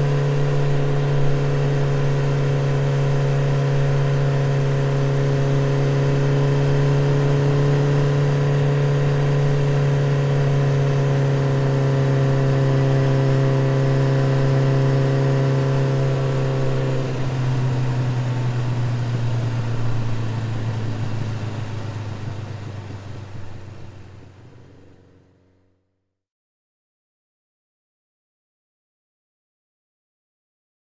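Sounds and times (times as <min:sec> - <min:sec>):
motorcycle engine running: 0:00.0 - 0:25.6.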